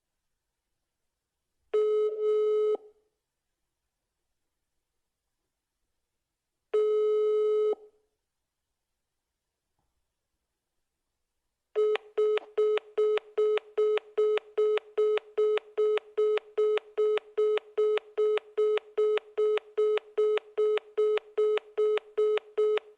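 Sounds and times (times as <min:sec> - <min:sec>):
phone call tone beeps: 0:11.8 - 0:22.9.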